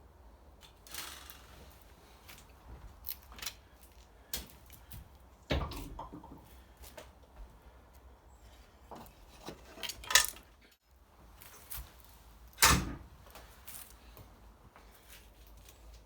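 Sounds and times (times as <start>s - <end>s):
metal parts clattering on workbench: 9.0s - 10.5s.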